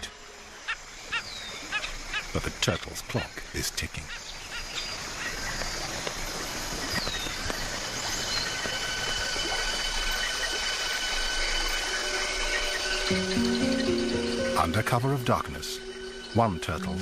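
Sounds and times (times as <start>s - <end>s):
insects hissing: 0.0s - 17.0s
high whining insect tones: 4.2s - 17.0s.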